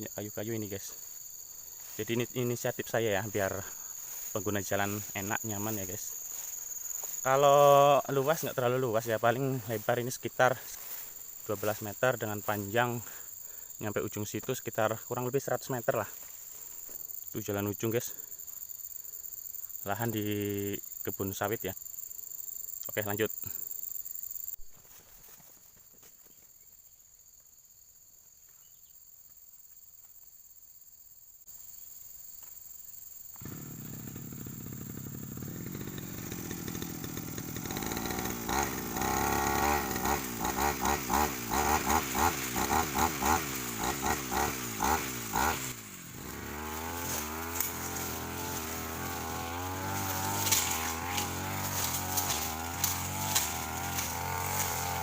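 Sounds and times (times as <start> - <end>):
insects chirping: 0.0 - 55.0
brush cutter engine revving: 0.2 - 14.2, 16.1 - 16.9, 33.4 - 55.0.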